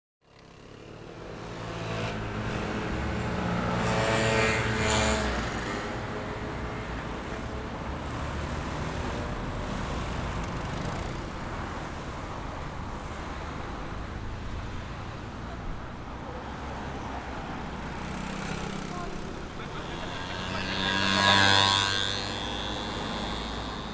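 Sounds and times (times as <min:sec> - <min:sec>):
passing cars: 0:00.3 - 0:23.9
vehicle engine passing close: 0:16.3 - 0:23.9.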